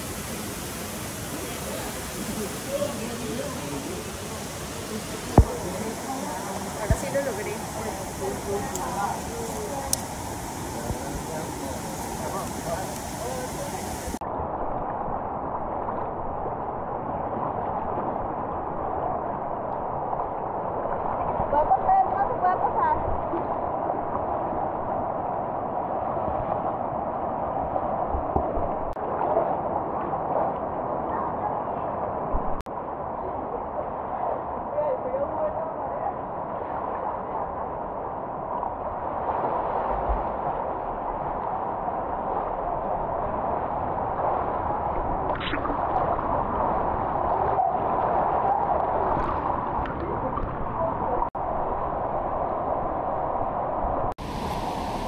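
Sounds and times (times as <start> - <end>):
river water rushing: 0.0 - 14.2, 54.2 - 55.0.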